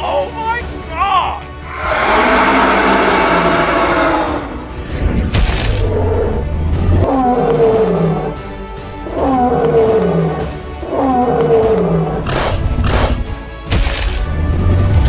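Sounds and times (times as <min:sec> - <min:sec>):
repeating background music: 0:00.0 - 0:15.0
growling animal roar: 0:01.6 - 0:04.9.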